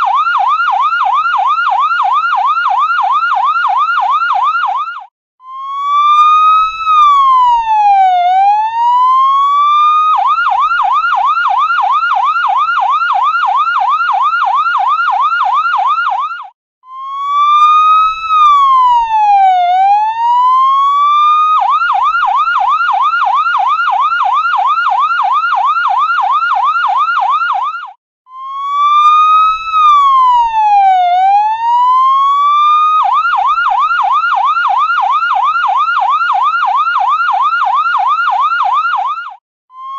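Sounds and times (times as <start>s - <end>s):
ambulance siren wailing and yelping: 0.0s - 39.9s.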